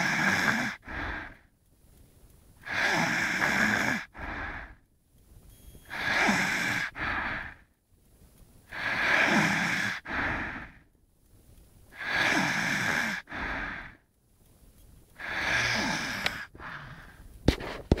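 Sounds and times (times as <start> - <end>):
person snoring: 0.0 - 1.4, 2.6 - 4.8, 5.9 - 7.6, 8.7 - 10.8, 12.0 - 14.0, 15.2 - 17.2.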